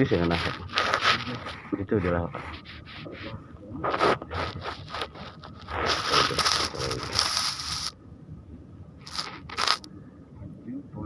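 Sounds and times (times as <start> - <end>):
crackling handling noise: 0.0 - 3.1, 3.8 - 8.0, 9.0 - 9.9.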